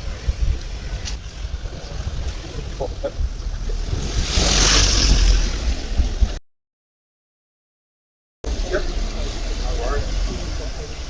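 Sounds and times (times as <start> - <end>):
wind buffeting microphone: 0.0 - 6.4.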